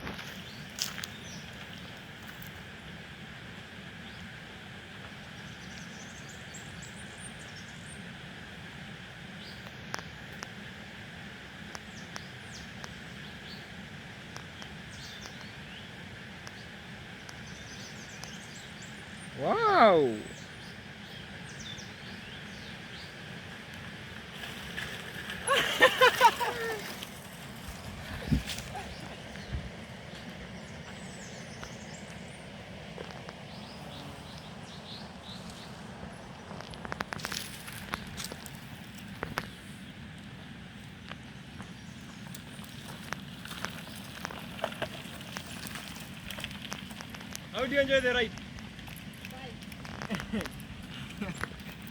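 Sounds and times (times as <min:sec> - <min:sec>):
low rumble and hiss: 0:00.0 - 0:51.9
birds chirping: 0:11.7 - 0:24.9, 0:25.5 - 0:51.9.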